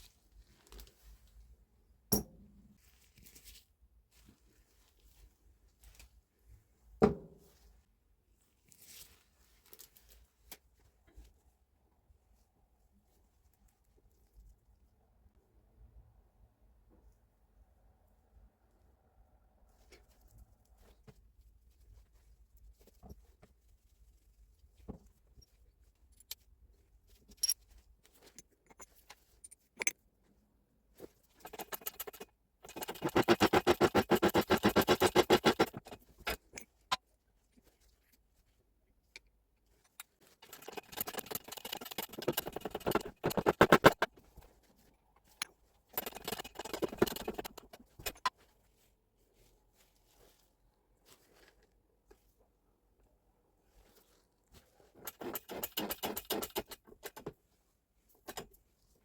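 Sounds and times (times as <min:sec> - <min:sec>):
rapid metallic rattling: 0:31.4 - 0:36.5, 0:40.4 - 0:44.1, 0:46.0 - 0:48.3, 0:55.0 - 0:57.2
metal parts clinking: 0:31.4 - 0:36.7, 0:40.4 - 0:44.1, 0:46.0 - 0:48.3.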